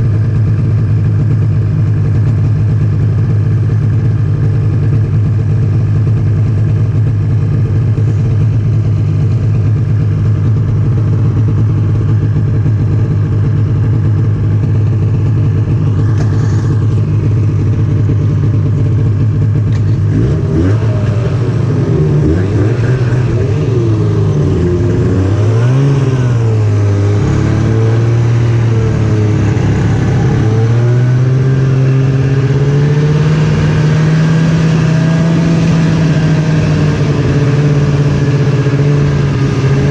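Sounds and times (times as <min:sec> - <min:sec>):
snowmobile engine revving: 0:14.7 - 0:39.9.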